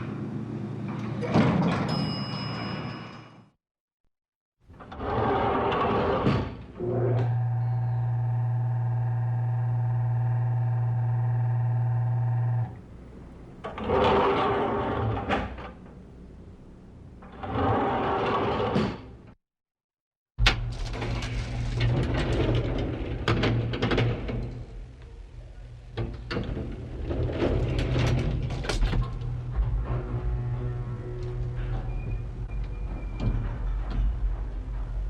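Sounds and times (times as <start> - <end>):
elevator doors sliding: 20.7 - 24.7, 26.2 - 35.0.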